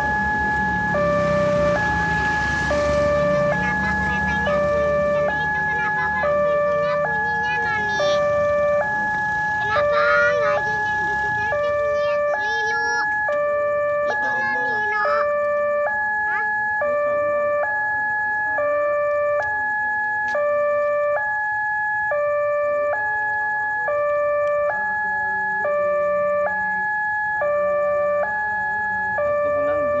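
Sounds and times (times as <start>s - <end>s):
level crossing two-tone alarm: 0.0s - 30.0s.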